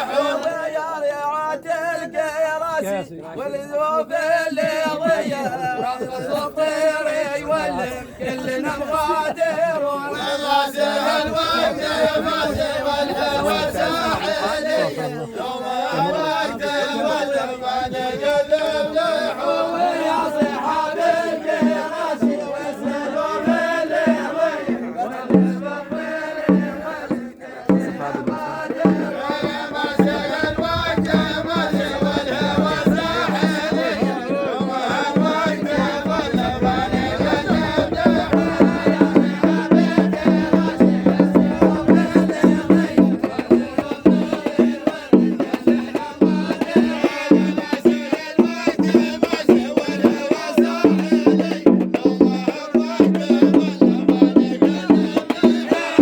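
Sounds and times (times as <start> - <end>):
voices chanting a melody: 0.0 - 3.0, 3.7 - 56.0
hand drums: 20.3 - 56.0.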